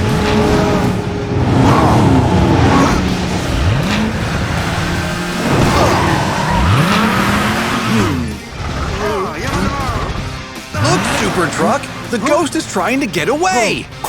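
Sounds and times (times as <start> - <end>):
tyre squeal: 0.0 - 8.3
race car engine revving: 0.0 - 14.0.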